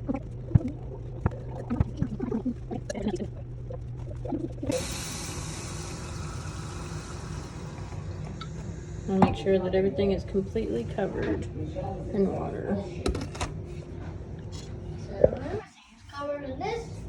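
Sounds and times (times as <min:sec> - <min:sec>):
water running into a jar: 0:00.0 - 0:09.4.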